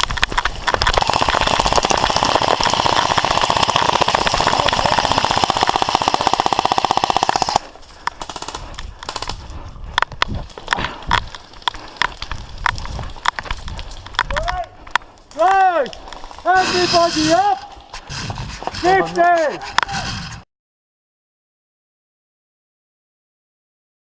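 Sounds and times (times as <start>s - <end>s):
airsoft gun full-auto burst: 0.9s - 9.3s.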